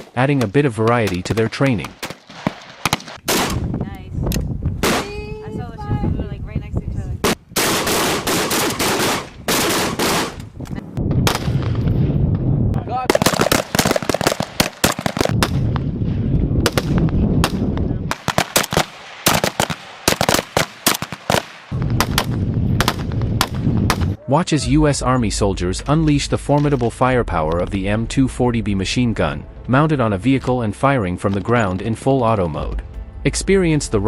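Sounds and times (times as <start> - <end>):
assault rifles firing: 1.0 - 3.6, 7.2 - 10.4, 13.1 - 15.7, 16.7 - 24.2.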